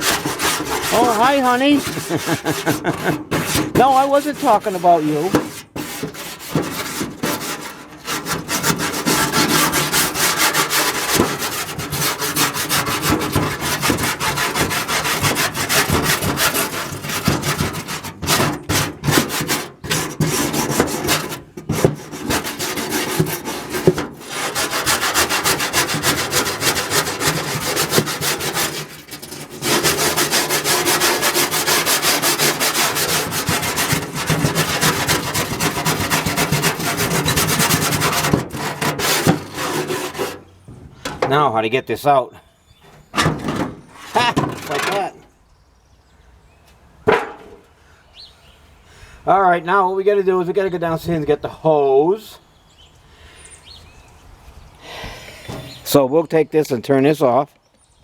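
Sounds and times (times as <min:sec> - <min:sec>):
wire brush scraping metal: 0:00.0 - 0:41.2, 0:42.8 - 0:45.3.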